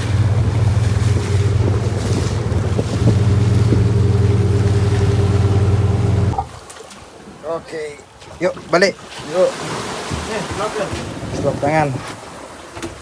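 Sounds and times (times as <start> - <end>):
wind buffeting microphone: 0.0 - 6.5, 10.7 - 12.0
boat engine droning: 0.0 - 6.6.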